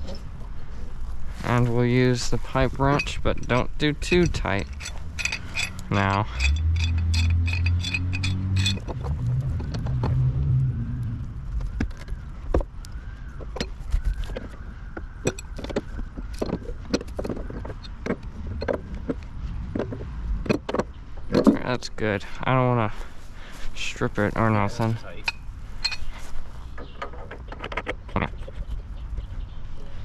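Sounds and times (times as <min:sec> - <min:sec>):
metal pipe fittings clinking: 0:02.4 - 0:09.8, 0:25.2 - 0:26.2.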